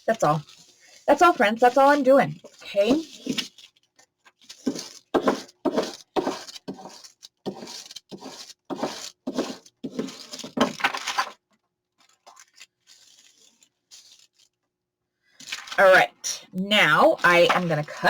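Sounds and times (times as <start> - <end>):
faint paper rustling: 0.0 - 16.1, 16.8 - 18.0
paper scraping strokes: 0.1 - 11.1, 12.0 - 14.6.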